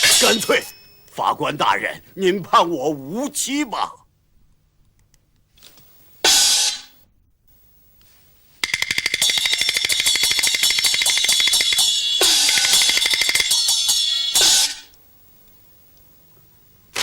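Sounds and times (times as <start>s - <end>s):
metallic cymbal roll: 8.6s - 14.9s.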